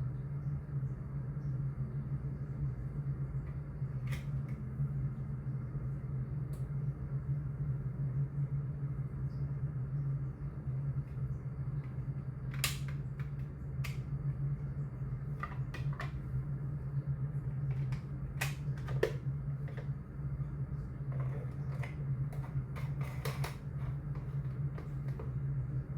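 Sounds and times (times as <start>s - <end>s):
steady low hum: 0.0s - 25.9s
plastic parts clicking into place: 12.5s - 14.0s.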